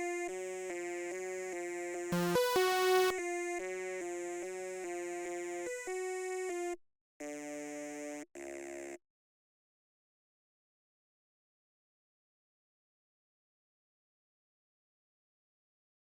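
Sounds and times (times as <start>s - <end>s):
filtered synthesizer notes: 2.2s - 3.2s.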